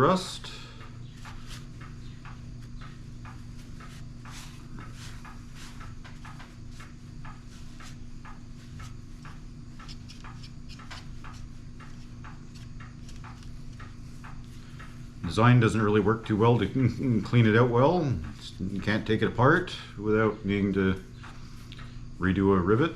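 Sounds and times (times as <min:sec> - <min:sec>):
steady low hum: 0:00.0 - 0:22.9.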